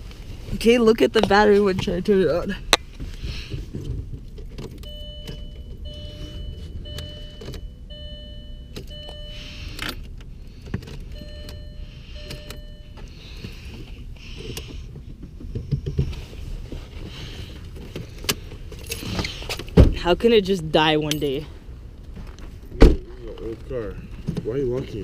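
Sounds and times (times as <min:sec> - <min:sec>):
car warning chime pulses: 0:04.8 - 0:10.0, 0:11.0 - 0:13.8.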